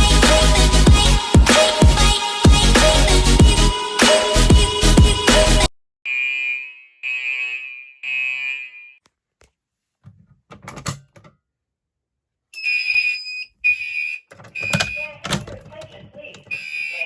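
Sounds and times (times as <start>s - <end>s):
fire alarm beeping: 6.1s - 9.0s, 12.6s - 17.0s.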